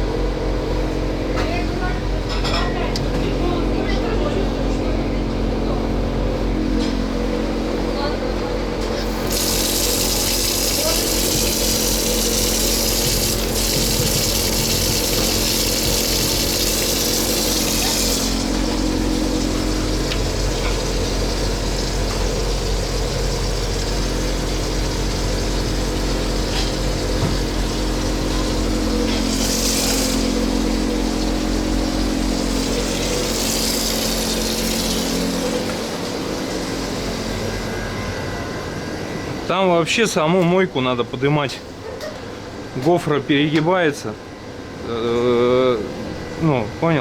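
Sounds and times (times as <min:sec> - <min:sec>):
steady mechanical hum: 0:00.0 - 0:47.0
tap water running into sink: 0:09.0 - 0:36.6.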